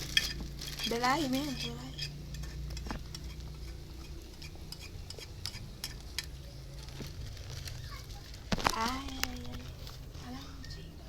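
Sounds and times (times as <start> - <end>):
campfire crackling: 2.0 - 10.5.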